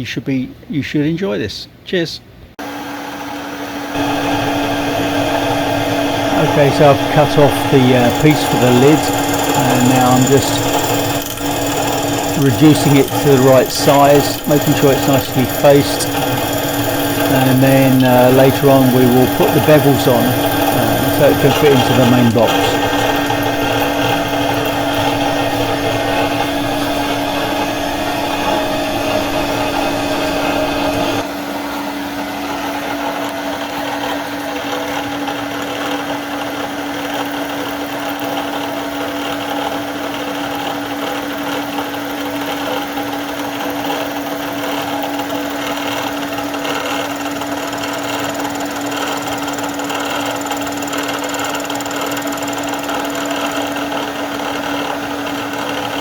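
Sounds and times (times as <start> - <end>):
machine tool humming: 2.6 - 31.4, 33.0 - 56.0.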